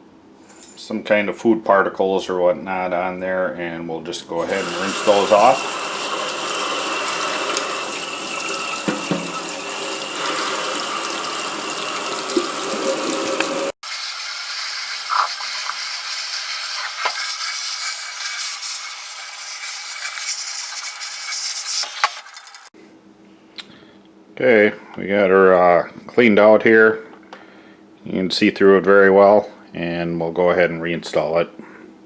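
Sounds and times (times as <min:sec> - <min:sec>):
tap water running: 0:04.4 - 0:22.7.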